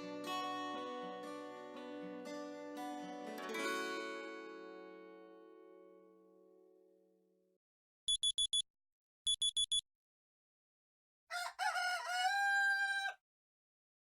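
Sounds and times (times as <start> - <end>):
high electronic beeps: 8.1 - 8.6, 9.3 - 9.8
recorded rooster crowing: 11.3 - 13.2.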